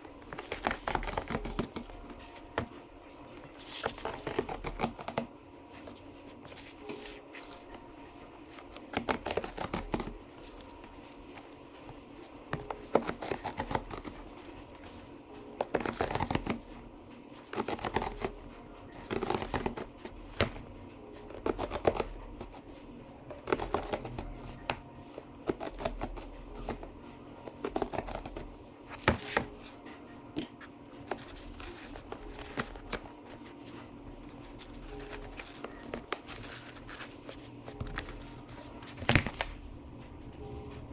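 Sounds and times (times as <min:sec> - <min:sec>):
razor blade cutting foam: 0:00.0 - 0:02.5, 0:03.5 - 0:05.3, 0:08.5 - 0:10.8, 0:12.6 - 0:20.6, 0:21.3 - 0:22.7, 0:23.3 - 0:29.7, 0:31.1 - 0:34.0.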